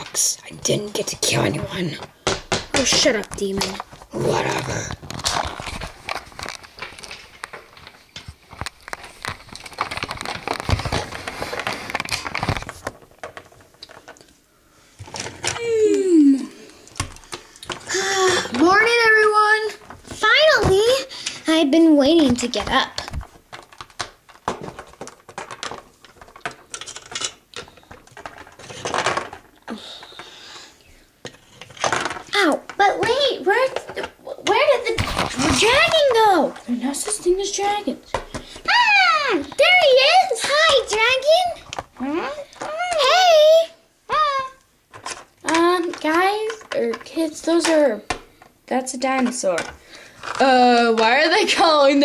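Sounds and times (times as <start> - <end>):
plastic toys clicking and tapping: 0.0 - 4.1, 4.8 - 14.4, 15.0 - 16.0, 16.7 - 30.3, 31.2 - 52.0
plastic toy figures clicking: 44.1 - 48.3.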